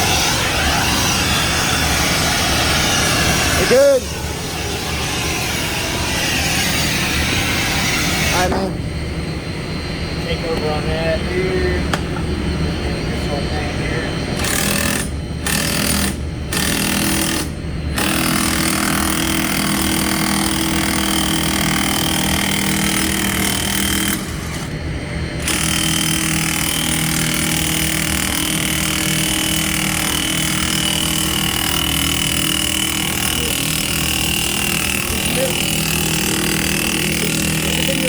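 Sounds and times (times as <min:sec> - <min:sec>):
high whine: 0:00.0 - 0:14.4, 0:17.6 - 0:38.0
large machinery running: 0:00.0 - 0:38.0.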